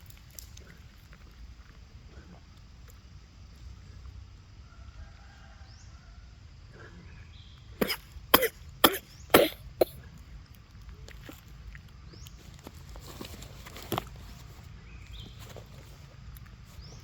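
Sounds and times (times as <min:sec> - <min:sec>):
harsh coughs: 0:07.8 - 0:10.0.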